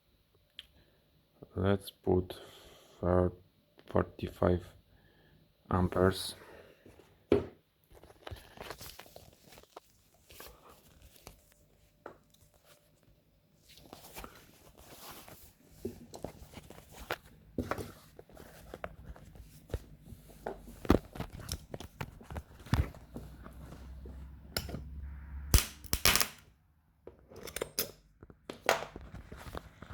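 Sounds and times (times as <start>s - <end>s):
spot welder snapping: 25.5s - 26.5s.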